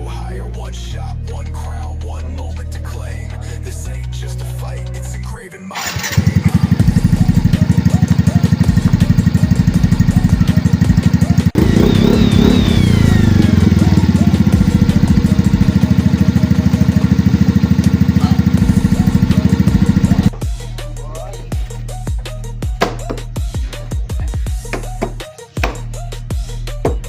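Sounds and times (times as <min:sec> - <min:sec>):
scooter engine exhaust pulsing: 0:05.8 - 0:20.6.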